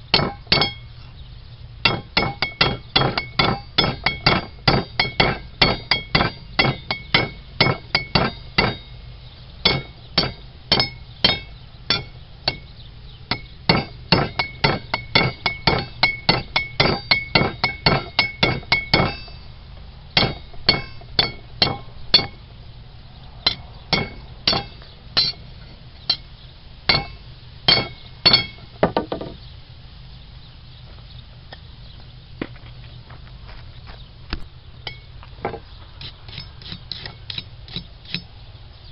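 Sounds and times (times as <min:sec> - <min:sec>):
hammer ringing on anvil: 0:00.2 - 0:00.9, 0:01.9 - 0:08.9, 0:09.6 - 0:12.7, 0:13.3 - 0:19.4, 0:20.2 - 0:22.4, 0:23.5 - 0:25.4, 0:26.9 - 0:28.6.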